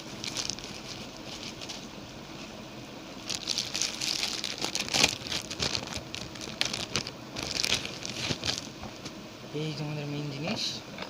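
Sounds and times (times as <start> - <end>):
packaging crinkling and rustling: 0.0 - 1.9, 3.2 - 9.0.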